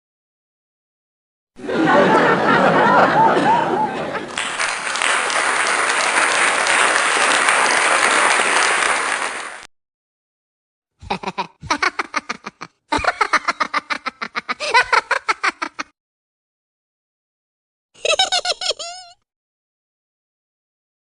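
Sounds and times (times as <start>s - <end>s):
rapid pulsing laughter: 1.6s - 4.3s, 11.0s - 15.9s
applause: 4.2s - 9.7s.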